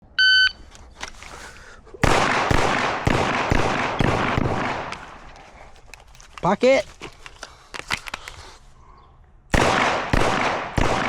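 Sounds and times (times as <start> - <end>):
pistol shots echoing: 2.0 - 5.2, 9.5 - 11.0.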